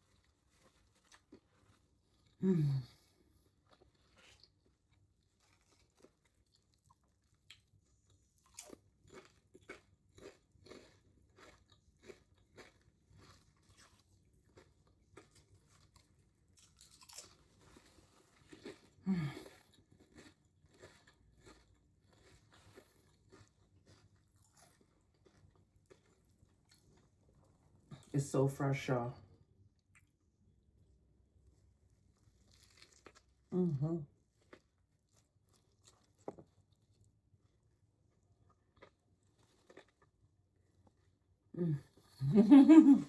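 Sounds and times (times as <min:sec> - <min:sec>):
chewing sandwich with soft crunches: 0:00.0 - 0:28.1, 0:29.6 - 0:42.2
person humming mm: 0:02.4 - 0:02.9, 0:41.6 - 0:42.4.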